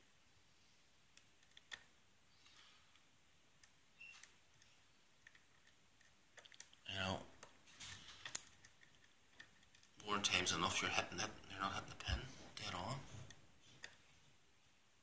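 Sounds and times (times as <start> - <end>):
lock pick clicking in lock: 8.2 - 10.0.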